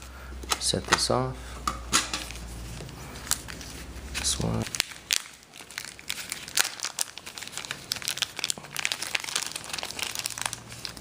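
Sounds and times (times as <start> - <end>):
packaging crinkling: 2.2 - 11.0.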